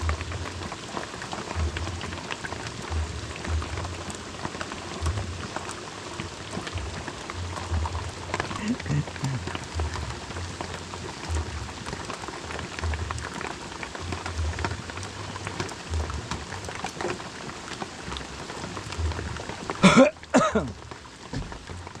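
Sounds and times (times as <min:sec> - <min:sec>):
heavy rain pattering: 0:00.0 - 0:22.0
brief loud voice or cough: 0:19.8 - 0:20.7.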